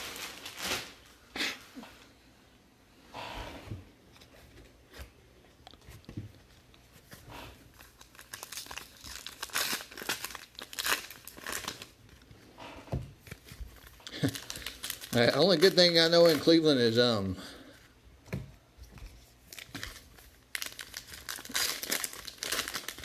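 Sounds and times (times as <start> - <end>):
card pack wrappers tearing: 7.7 - 12.0, 13.3 - 17.0, 19.5 - 23.0.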